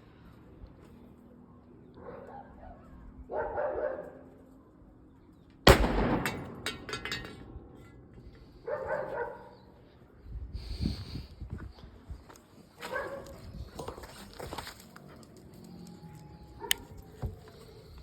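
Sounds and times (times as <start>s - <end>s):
dog barking: 2.0s - 4.3s, 8.6s - 9.7s, 12.8s - 14.0s
revolver gunshot with echo: 5.7s - 8.1s.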